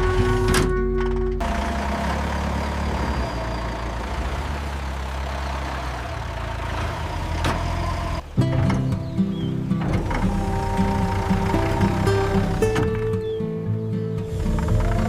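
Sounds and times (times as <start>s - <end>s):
heavy engine rumbling: 0.0s - 15.0s.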